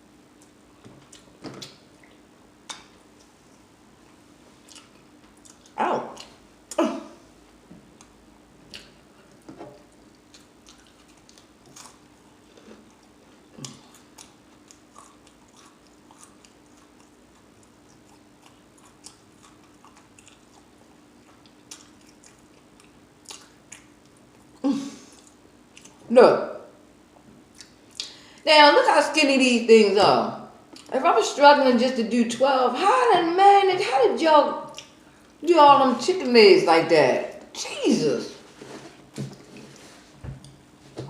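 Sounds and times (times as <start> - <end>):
faint steady hum: 0.0 - 41.0
chewing and mouth smacking: 0.4 - 3.3, 4.6 - 6.4, 8.0 - 26.0, 27.5 - 28.2
crispy food crunching: 9.9 - 24.6.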